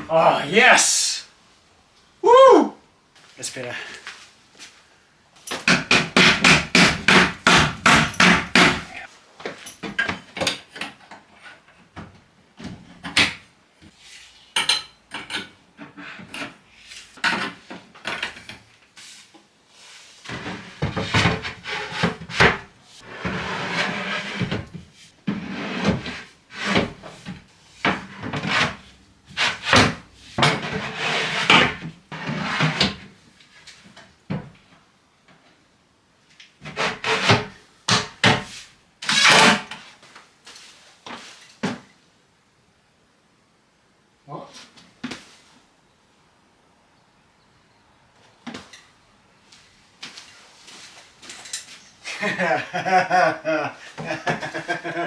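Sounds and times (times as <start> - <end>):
hammering on wooden panels: 5.6 - 9.0
wooden scraping: 20.3 - 33.0.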